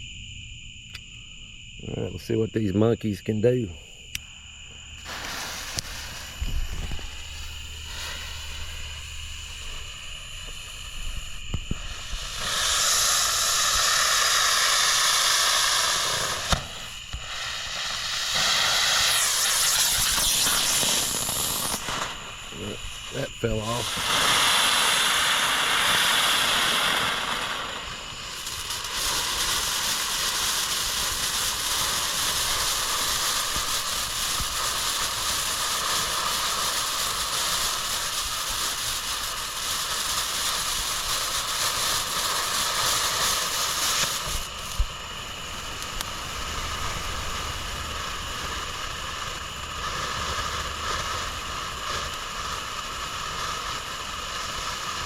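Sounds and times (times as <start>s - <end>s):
firework fountain hissing and crackling: 1.8s - 55.0s
sharp pop: 11.4s - 13.0s, 15.6s - 22.2s.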